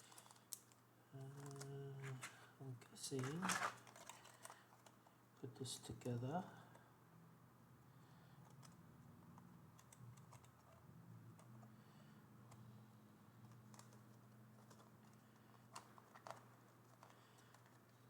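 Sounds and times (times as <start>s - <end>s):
plastic parts clicking: 0.0s - 2.3s, 3.2s - 5.0s, 13.4s - 17.9s
low steady hum: 0.0s - 18.0s.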